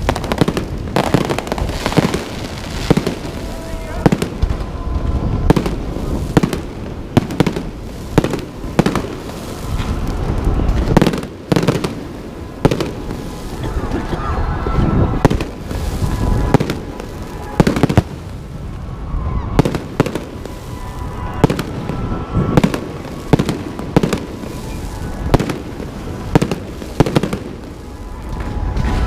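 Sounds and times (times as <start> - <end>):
fireworks bursting bangs: 0.0 - 29.0.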